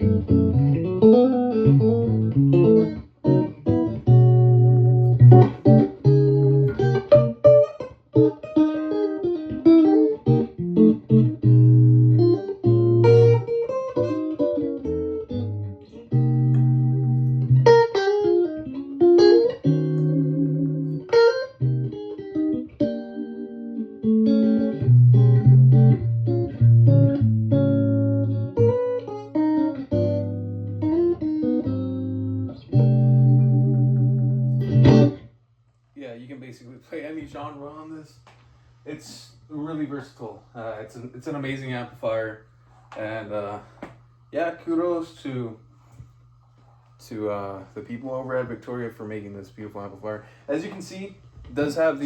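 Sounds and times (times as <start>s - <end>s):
electric guitar playing: 0.0s - 35.3s.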